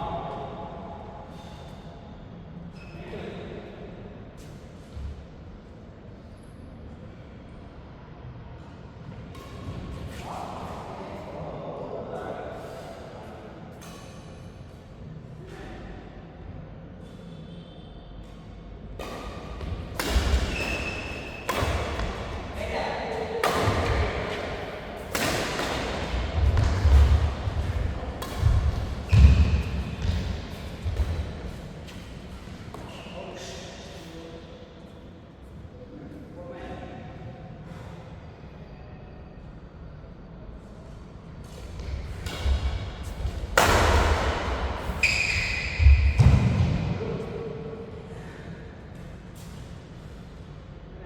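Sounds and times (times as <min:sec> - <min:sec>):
racket striking shuttlecock: 0:19.0 - 0:22.6, 0:23.4 - 0:32.0, 0:43.5 - 0:46.7
deep thumps: 0:26.0 - 0:31.6
footfalls on court floor: 0:26.1 - 0:32.0.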